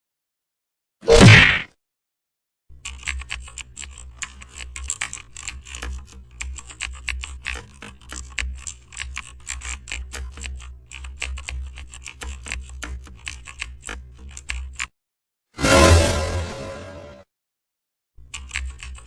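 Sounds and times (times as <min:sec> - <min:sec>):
keyboard typing: 0:02.8 - 0:14.9, 0:18.2 - 0:19.0.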